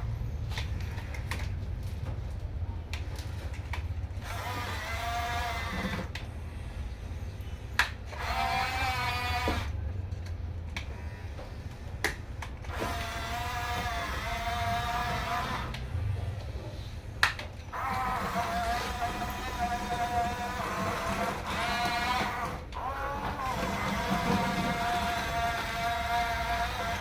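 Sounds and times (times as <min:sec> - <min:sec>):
electric motors whining: 0:00.0 - 0:27.0.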